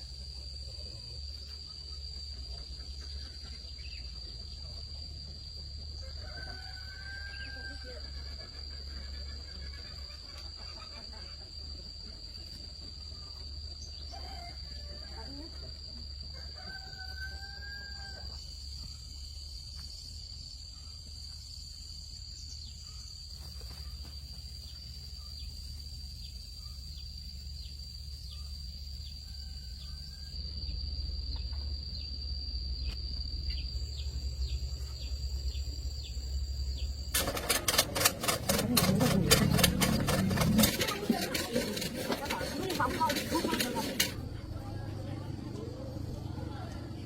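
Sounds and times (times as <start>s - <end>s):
cock crowing: 6.0s - 11.2s, 14.1s - 15.4s, 16.3s - 18.4s
rapid loud clattering: 37.1s - 44.2s.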